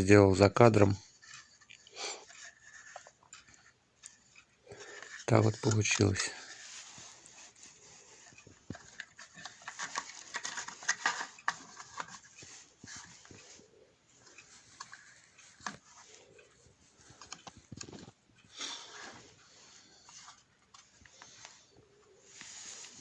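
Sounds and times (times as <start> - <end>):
small parts clicking and scraping: 0.7 - 21.7.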